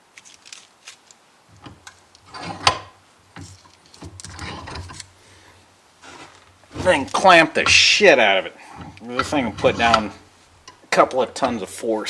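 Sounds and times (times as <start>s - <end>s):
wood clicking and knocking in vise: 1.5s - 5.1s, 8.8s - 11.7s.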